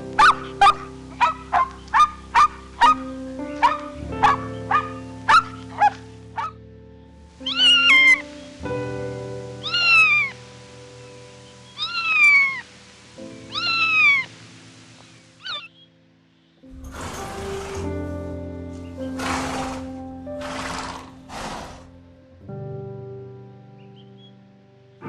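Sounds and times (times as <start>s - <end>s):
background music: 0.0s - 25.0s
cat meowing: 7.4s - 8.2s, 9.6s - 10.4s, 11.8s - 12.6s, 13.5s - 14.3s.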